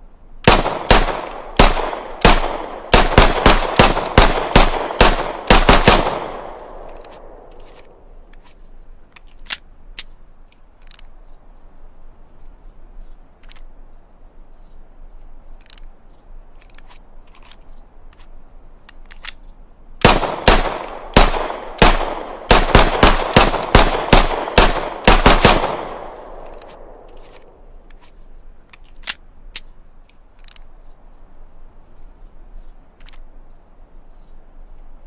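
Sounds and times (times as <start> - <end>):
pistol shots: 0.4 - 7.5, 20.0 - 27.4
gunshot echo: 0.5 - 7.5, 20.0 - 27.1.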